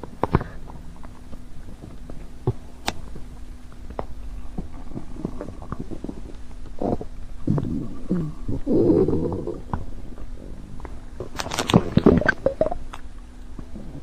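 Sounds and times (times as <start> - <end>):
steady low hum: 0.0 - 14.0
stomach gurgles and pops: 0.0 - 14.0.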